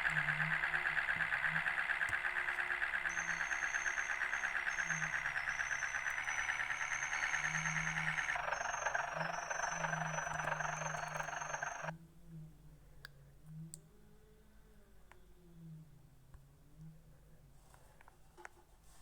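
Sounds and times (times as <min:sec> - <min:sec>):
faint clicks: 0:00.0 - 0:11.9
fast-pulsing electronic buzz: 0:00.0 - 0:11.9.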